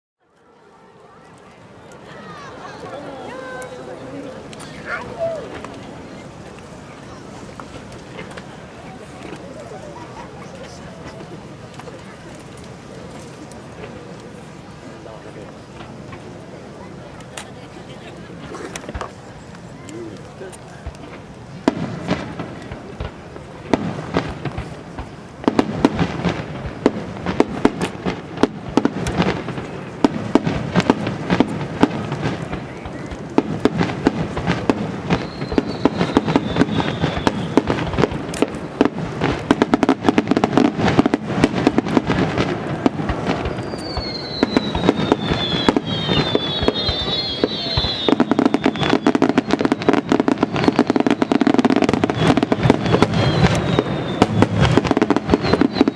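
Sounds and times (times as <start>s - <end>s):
fireworks bursts and crackles: 0.3s - 55.9s
falling firework whistles: 21.1s - 55.9s.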